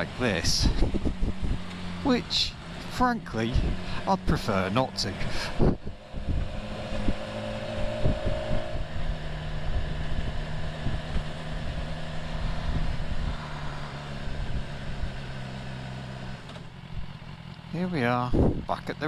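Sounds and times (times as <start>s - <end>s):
motorcycle engine running: 0.0s - 19.0s
wind noise on microphone: 0.4s - 1.7s, 5.3s - 15.2s, 18.3s - 18.7s.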